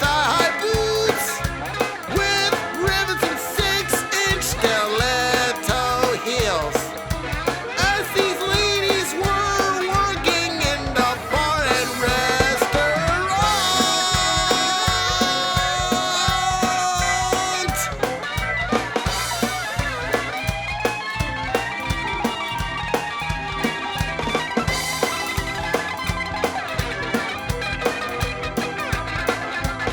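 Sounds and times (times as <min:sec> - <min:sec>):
song with beat and bass: 0:00.0 - 0:29.9.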